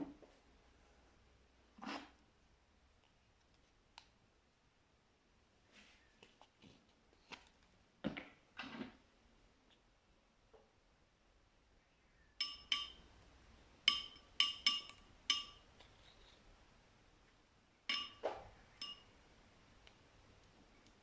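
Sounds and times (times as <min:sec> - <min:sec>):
hard object clinking: 0:12.4 - 0:13.1, 0:13.8 - 0:15.7, 0:17.9 - 0:19.1.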